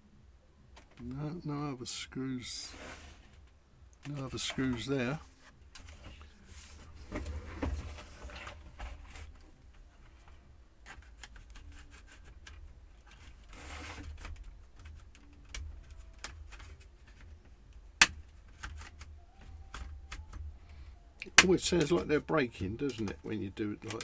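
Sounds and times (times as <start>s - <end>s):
plastic scraping: 2.7s - 24.0s
plastic clips clicking and cracking: 10.9s - 24.0s
loud plastic snap: 21.2s - 22.0s.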